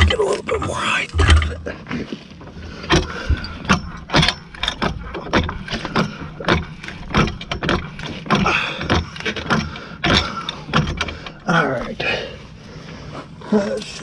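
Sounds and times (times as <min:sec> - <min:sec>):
floor jack clunking: 0:01.1 - 0:11.4.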